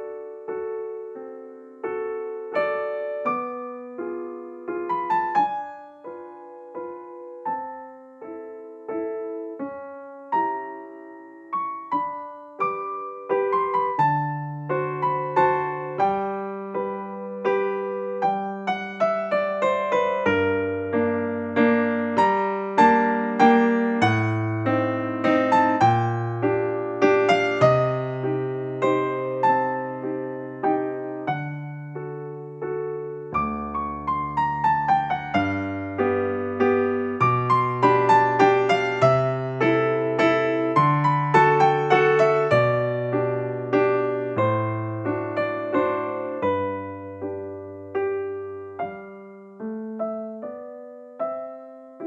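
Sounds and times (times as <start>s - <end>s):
gentle piano tune: 0.0s - 52.0s.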